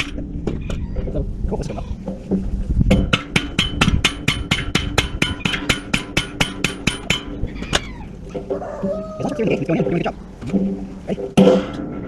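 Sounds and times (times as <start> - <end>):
hammer striking metal: 3.0 - 7.4.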